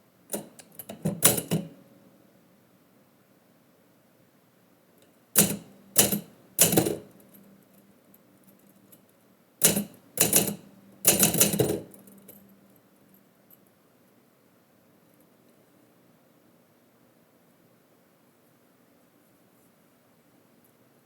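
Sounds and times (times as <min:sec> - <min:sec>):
typewriter keystrokes: 0:00.3 - 0:01.7, 0:05.4 - 0:07.1, 0:09.6 - 0:12.0.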